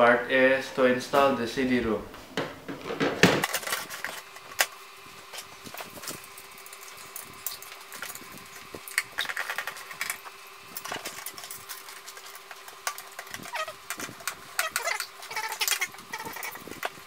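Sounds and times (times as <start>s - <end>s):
faint steady hum: 0.0s - 17.0s
computer hardware clicks and rattles: 5.8s - 17.0s.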